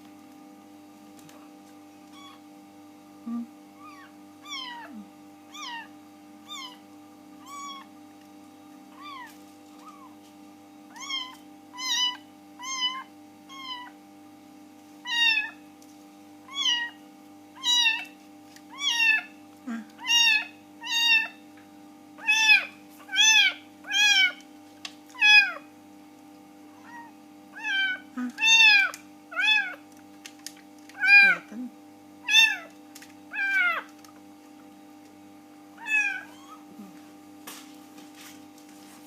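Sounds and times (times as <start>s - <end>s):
kittens mewing: 2.1s - 2.4s, 3.3s - 6.8s, 7.4s - 7.9s, 8.9s - 10.2s, 10.9s - 14.0s, 15.0s - 15.6s, 16.5s - 17.0s, 17.6s - 18.1s, 18.7s - 21.4s, 22.2s - 24.4s, 25.2s - 25.7s, 26.8s - 29.8s, 30.9s - 31.5s, 32.2s - 32.7s, 33.3s - 33.9s, 35.8s - 37.0s.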